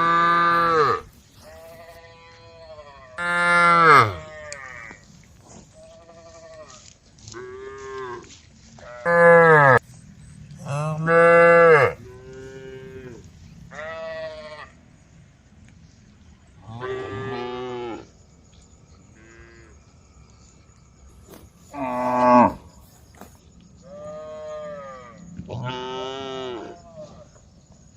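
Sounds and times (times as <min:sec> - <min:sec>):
cows mooing: 0:00.0 - 0:01.9, 0:03.2 - 0:05.0, 0:09.0 - 0:09.8, 0:10.6 - 0:14.7, 0:21.7 - 0:22.6, 0:23.9 - 0:27.2.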